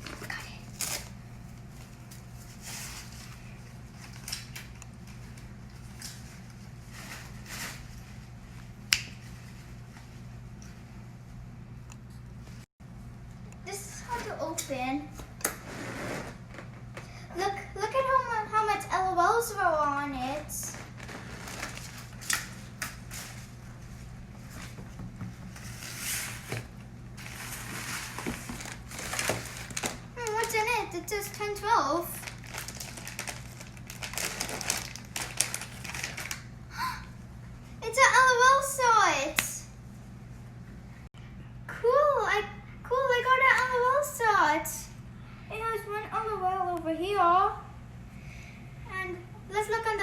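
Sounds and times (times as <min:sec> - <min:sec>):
steady low hum: 0:00.0 - 0:50.0
packaging rustling: 0:20.7 - 0:23.5, 0:27.2 - 0:30.7, 0:32.1 - 0:36.5.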